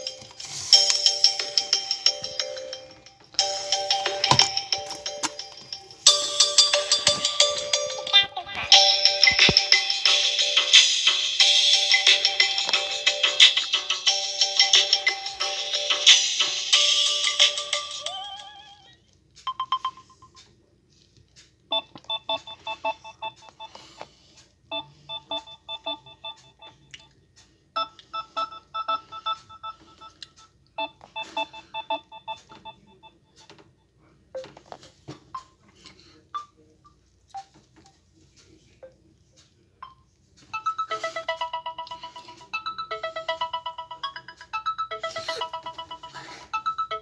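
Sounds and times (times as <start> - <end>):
phone ringtone: 0.0 - 18.9, 21.7 - 23.9, 24.7 - 26.9, 27.8 - 33.5, 39.8 - 47.0.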